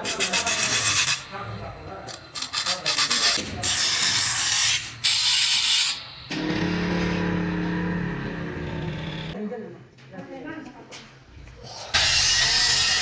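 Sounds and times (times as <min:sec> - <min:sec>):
metal being filed by hand: 0:00.0 - 0:06.1, 0:11.9 - 0:13.0.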